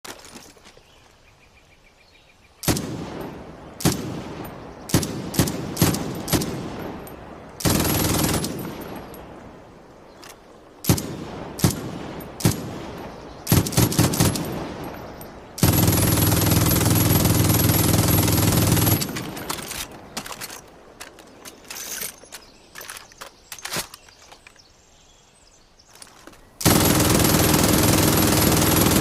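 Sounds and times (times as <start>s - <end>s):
machine gun firing bursts: 2.6s - 7.0s, 7.6s - 9.2s, 10.8s - 15.0s, 15.6s - 19.9s, 26.6s - 29.0s.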